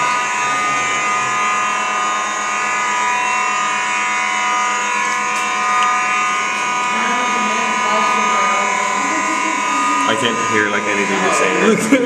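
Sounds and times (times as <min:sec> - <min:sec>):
fire alarm steady tone: 0:00.0 - 0:12.0.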